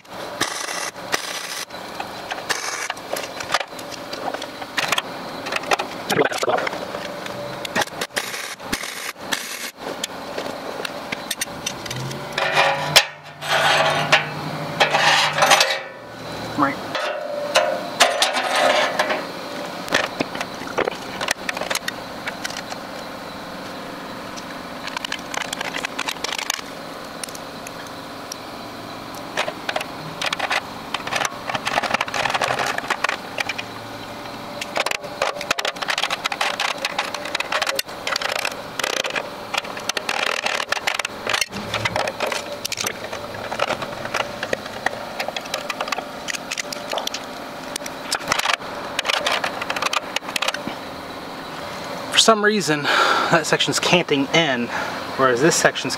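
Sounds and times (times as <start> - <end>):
welding arc crackling sizzle: 0.0 - 16.7.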